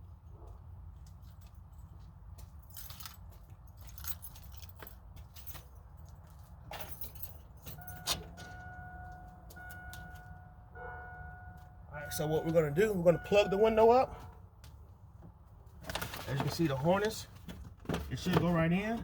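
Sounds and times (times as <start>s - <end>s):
keys jangling: 2.4s - 10.3s.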